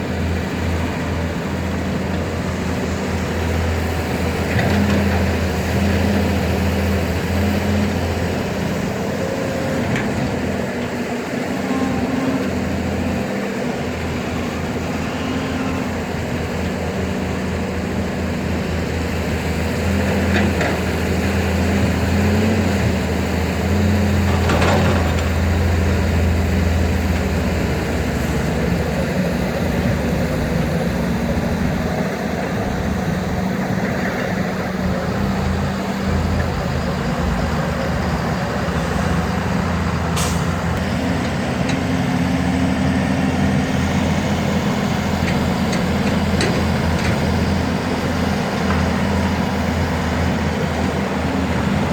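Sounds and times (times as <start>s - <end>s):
excavator diesel engines droning: 0.0s - 51.9s.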